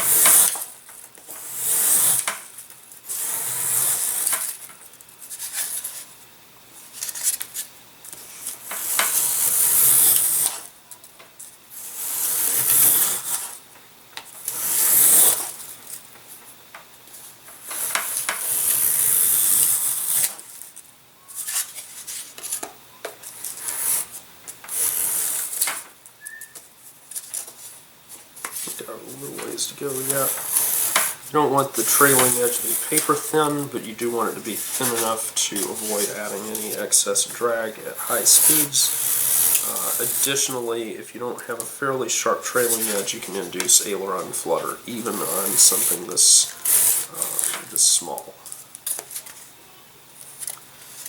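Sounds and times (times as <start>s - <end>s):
plane shaving wood: 0.0s - 0.6s, 1.3s - 2.4s, 3.1s - 4.5s, 8.8s - 10.6s, 11.8s - 13.6s, 14.4s - 15.6s, 17.6s - 20.4s, 23.4s - 25.7s, 28.5s - 48.3s.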